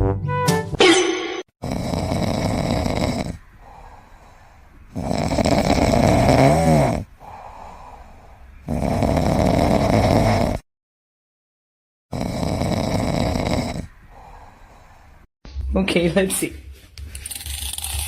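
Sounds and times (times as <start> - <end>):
pet snoring loudly: 1.6 - 4.2, 4.9 - 8.0, 8.6 - 10.6, 12.1 - 14.8
quiet breaths: 2.3 - 6.1, 7.0 - 8.7, 13.2 - 15.3.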